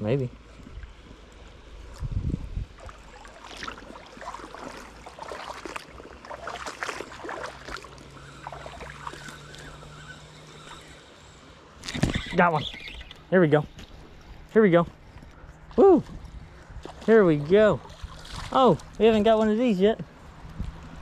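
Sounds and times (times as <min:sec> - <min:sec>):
creek water rushing and gurgling: 0:02.6 - 0:12.5, 0:16.5 - 0:20.2
small splashes: 0:02.7 - 0:10.9, 0:16.6 - 0:19.2.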